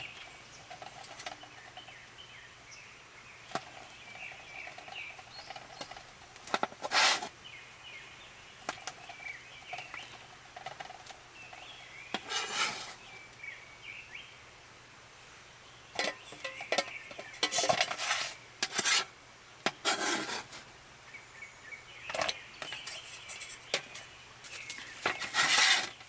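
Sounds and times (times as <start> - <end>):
pots rattling and scraping: 0.0 - 2.0, 3.5 - 7.4, 8.6 - 13.2, 15.9 - 19.1, 19.7 - 20.7, 22.1 - 26.0
small birds chirping: 0.0 - 14.6, 15.2 - 18.9, 19.5 - 26.0.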